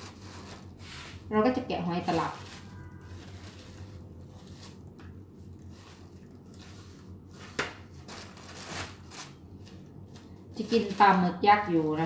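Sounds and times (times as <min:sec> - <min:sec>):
rustling and scraping: 0:02.0 - 0:11.2.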